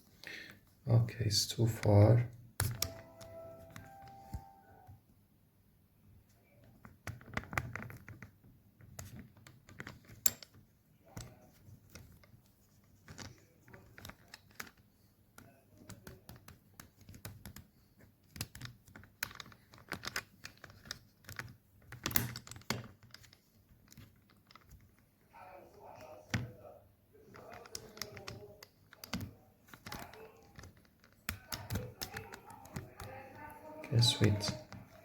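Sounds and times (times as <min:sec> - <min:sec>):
phone handling clicks and taps: 0:02.6 - 0:04.5.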